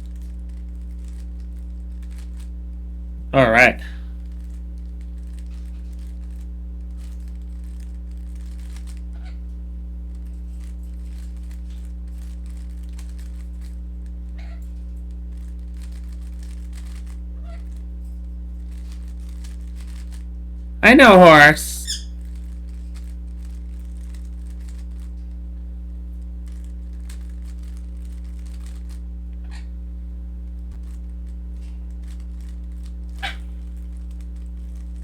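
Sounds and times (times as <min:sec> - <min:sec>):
steady electrical hum: 0:00.0 - 0:35.0.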